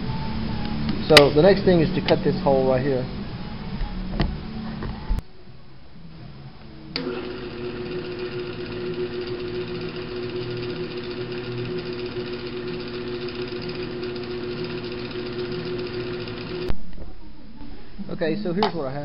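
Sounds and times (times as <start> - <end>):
drill press motor humming: 7.0 - 16.7.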